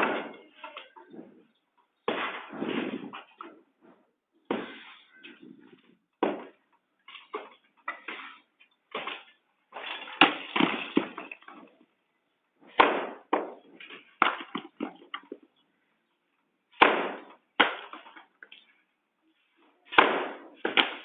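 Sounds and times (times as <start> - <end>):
sharp knocks and bangs: 0.0 - 0.5, 2.0 - 3.3, 6.2 - 6.6.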